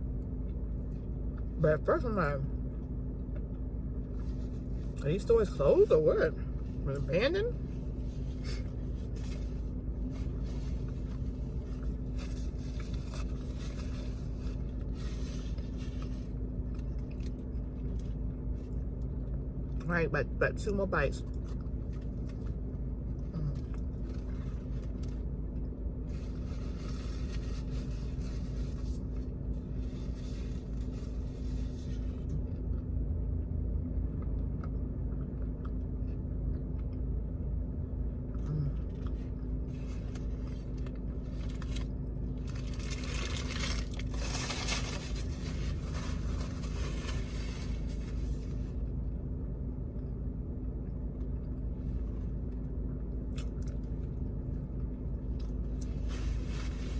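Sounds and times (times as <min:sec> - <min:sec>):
rustling noise: 0:07.9 - 0:16.3, 0:26.1 - 0:32.2, 0:39.8 - 0:48.8, 0:55.7 - 0:56.9.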